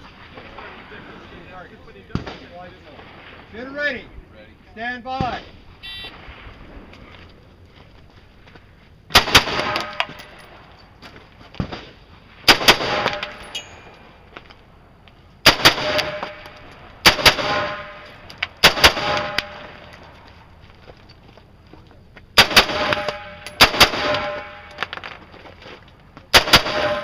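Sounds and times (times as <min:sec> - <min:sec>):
rifle shots with echo: 0:09.1 - 0:10.4, 0:11.7 - 0:13.5, 0:15.4 - 0:19.9, 0:22.4 - 0:24.9, 0:26.3 - 0:27.0.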